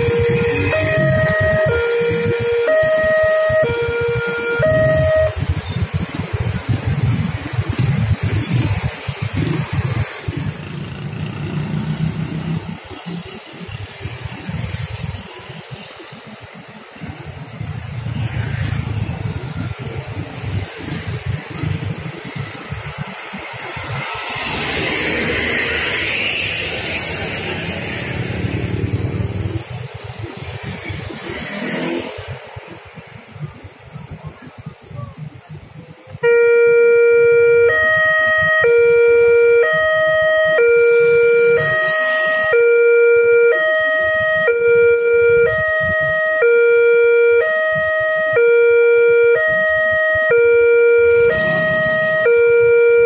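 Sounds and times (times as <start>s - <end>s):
two-tone electronic warning siren: 0.0s - 10.4s, 35.8s - 53.0s
cars and motorcycles running: 0.0s - 53.0s
vehicle passing close: 17.8s - 32.9s.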